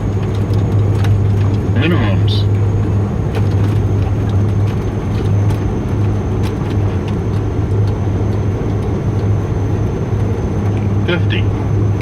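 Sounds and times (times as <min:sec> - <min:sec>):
propeller drone: 0:00.0 - 0:12.0.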